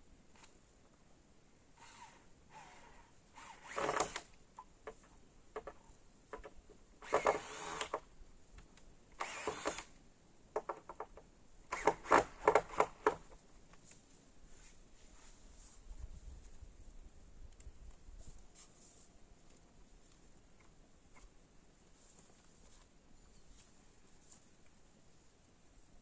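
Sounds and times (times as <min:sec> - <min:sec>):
sharp clicks and knocks: 0:04.8 - 0:08.9, 0:10.5 - 0:13.4
rustling scrapes: 0:13.8 - 0:17.1, 0:18.1 - 0:20.2.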